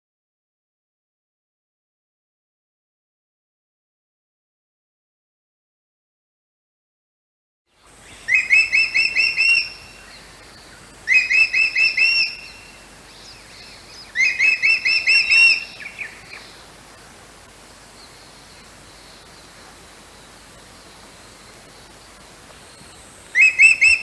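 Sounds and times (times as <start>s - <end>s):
bird singing ringing notes: 8.0s - 16.6s, 17.9s - 24.0s.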